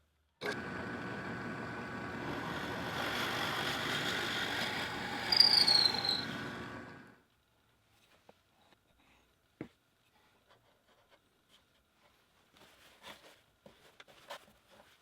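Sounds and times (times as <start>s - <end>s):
power tool motor running: 0.4s - 7.2s
high squeal dropping in pitch: 3.4s - 7.0s.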